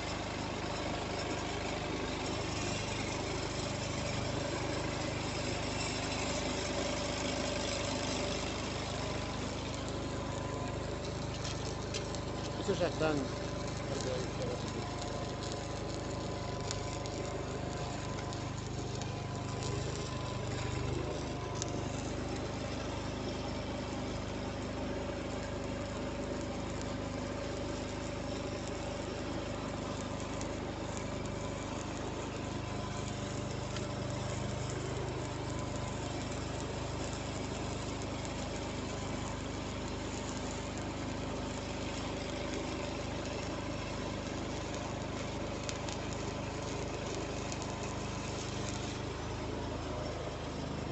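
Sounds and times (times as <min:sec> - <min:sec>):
engine running steadily: 0:00.0 - 0:50.9
steady whining tones: 0:07.9 - 0:24.4.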